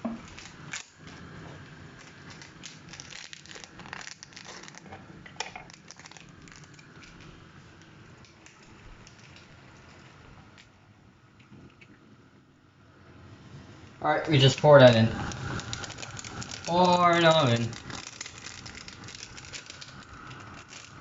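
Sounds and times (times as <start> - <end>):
sachet crinkling and crackling: 0.2 - 1.3, 1.9 - 10.0, 14.4 - 21.0.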